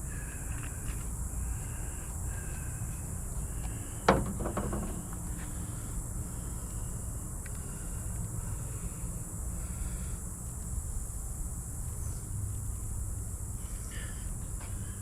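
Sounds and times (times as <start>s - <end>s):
sharp knock: 4.1s - 5.2s.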